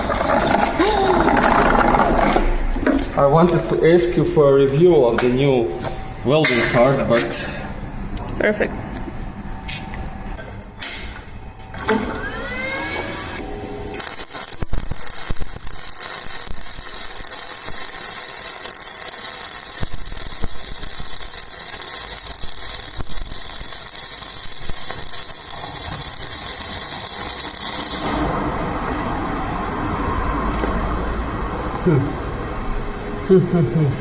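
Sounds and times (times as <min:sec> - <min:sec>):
welder arc crackling and sizzling: 0:12.9 - 0:29.0
welding arc pops: 0:13.9 - 0:28.3.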